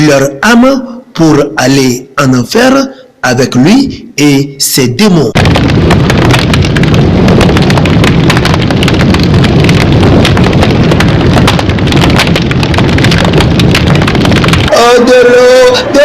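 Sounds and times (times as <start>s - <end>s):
deep rumble: 5.4s - 16.0s
roaring flames crackling: 5.4s - 16.0s.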